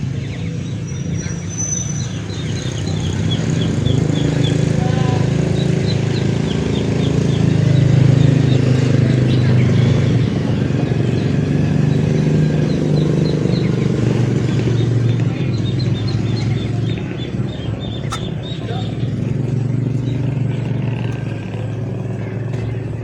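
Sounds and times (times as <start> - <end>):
birds chirping: 0.0 - 23.0
small engine running: 0.0 - 23.0.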